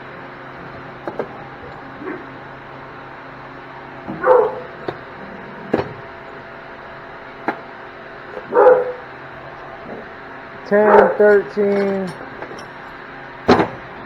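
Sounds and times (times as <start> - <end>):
dog barking: 4.1 - 4.8, 8.4 - 9.1, 10.7 - 11.5.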